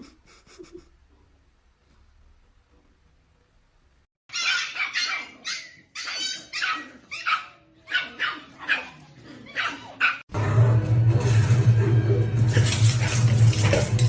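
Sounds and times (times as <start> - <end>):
dog barking: 4.3 - 10.2
loud low hum: 10.3 - 12.9.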